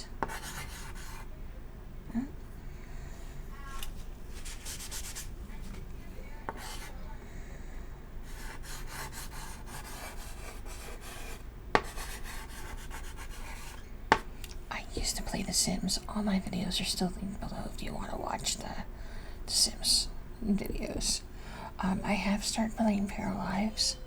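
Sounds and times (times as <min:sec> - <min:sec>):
chalk tapping on board: 0:00.2 - 0:01.2, 0:06.5 - 0:06.9, 0:08.4 - 0:14.3
chalk scratching on chalkboard: 0:00.2 - 0:01.3, 0:03.7 - 0:05.3, 0:06.5 - 0:07.0, 0:08.3 - 0:14.2.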